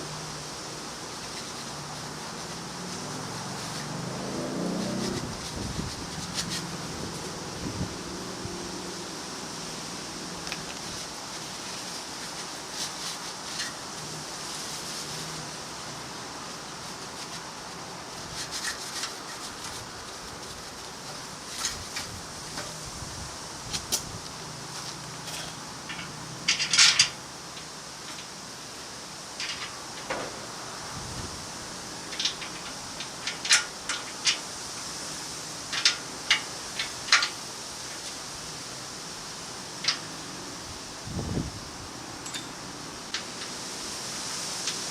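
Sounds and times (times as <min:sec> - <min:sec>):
steady hiss: 0:00.0 - 0:44.9
metal tools clicking and tapping: 0:25.2 - 0:28.3, 0:32.1 - 0:34.4, 0:35.7 - 0:37.4, 0:42.2 - 0:43.6.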